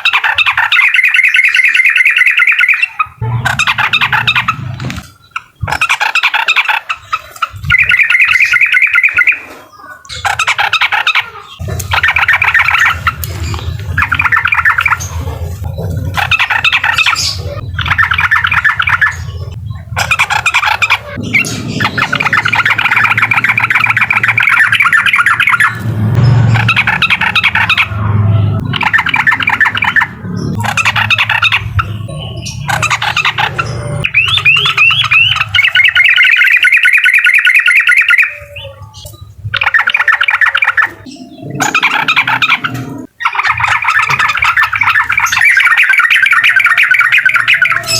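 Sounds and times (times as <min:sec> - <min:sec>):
bird chattering song: 0:00.0 - 0:47.9
bulbul singing trills: 0:00.0 - 0:47.9
steady low hum: 0:11.6 - 0:35.7.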